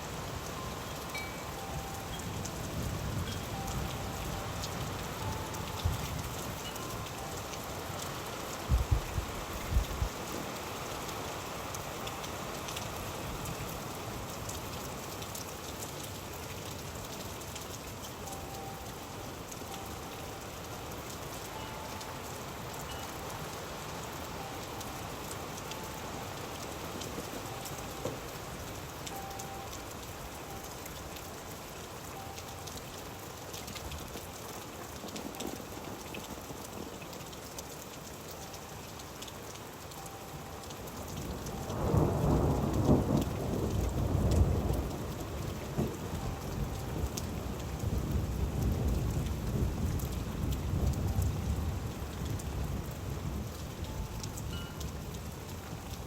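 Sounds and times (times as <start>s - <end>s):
rain pattering: 0.0s - 56.0s.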